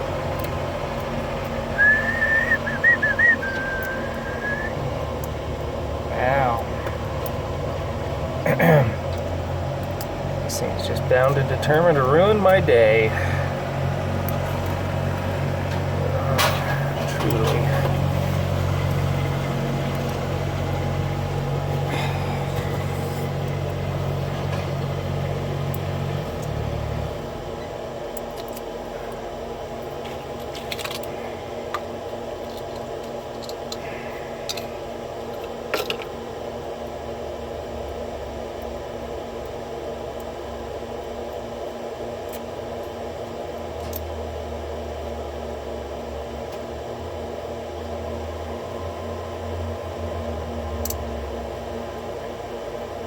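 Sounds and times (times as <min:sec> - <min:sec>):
steady low hum: 0:00.0 - 0:53.0
small clicks of lock parts: 0:28.1 - 0:28.7, 0:30.4 - 0:31.1, 0:31.8 - 0:33.8, 0:34.5 - 0:34.7, 0:43.8 - 0:44.1.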